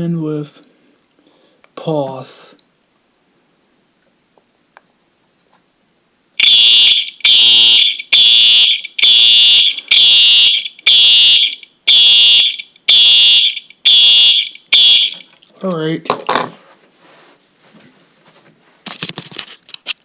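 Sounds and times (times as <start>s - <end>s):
fire alarm horn blasts: 6.4s - 15.2s.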